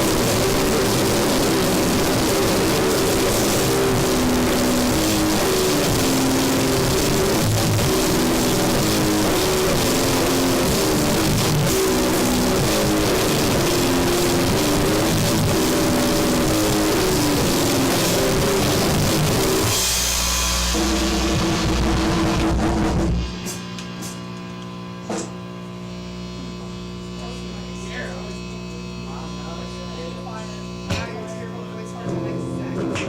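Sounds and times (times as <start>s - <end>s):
hardcore band playing: 0.0s - 23.6s
droning held chord: 0.0s - 23.9s, 26.0s - 33.0s
amplifier hum: 0.0s - 33.0s.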